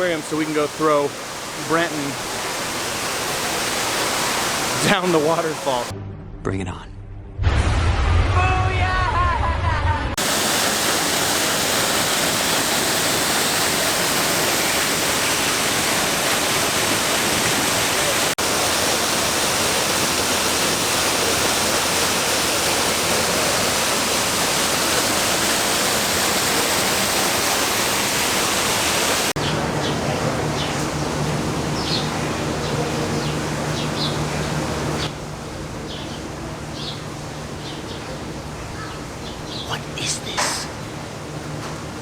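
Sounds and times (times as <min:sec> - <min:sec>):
waterfall rushing: 0:00.0 - 0:05.9, 0:10.2 - 0:37.6.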